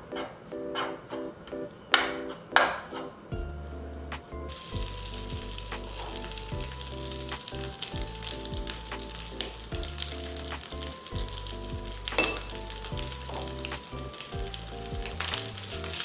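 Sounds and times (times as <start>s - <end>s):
food sizzling in a pan: 4.5s - 14.3s.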